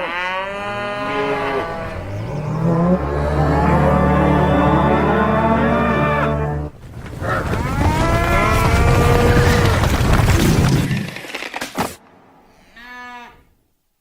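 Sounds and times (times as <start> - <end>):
chorus of cow moos: 0.0 - 9.8, 12.7 - 13.5.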